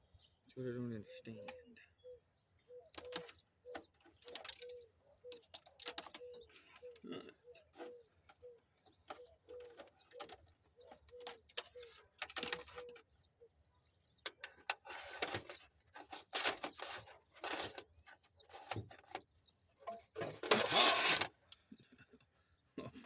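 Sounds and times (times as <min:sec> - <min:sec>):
dove cooing: 0:01.2 - 0:13.6
hands and tools clattering: 0:03.0 - 0:04.8, 0:05.4 - 0:13.0, 0:14.2 - 0:19.2, 0:19.8 - 0:21.4.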